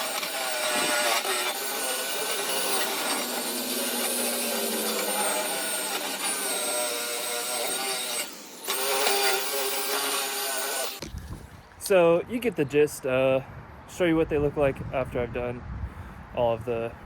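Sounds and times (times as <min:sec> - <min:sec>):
power wire brush on metal: 0:00.0 - 0:11.0.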